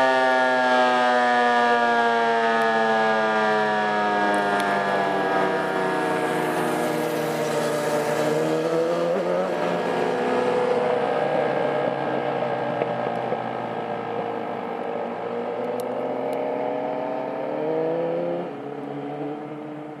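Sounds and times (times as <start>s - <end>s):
warning siren wavering chord: 0.0s - 18.5s.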